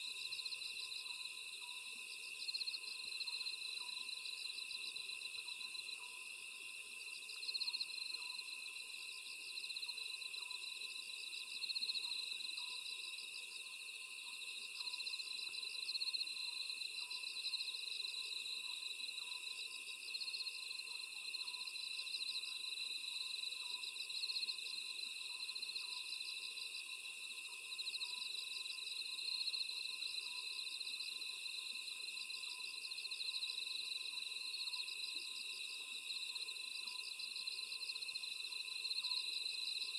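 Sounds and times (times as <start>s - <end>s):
crickets chorus: 0.1s - 39.9s.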